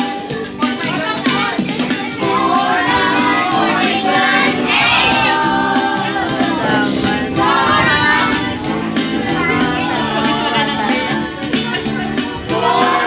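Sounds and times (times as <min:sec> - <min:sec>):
group singing: 0:00.0 - 0:13.0
instrumental backing music: 0:00.0 - 0:13.0.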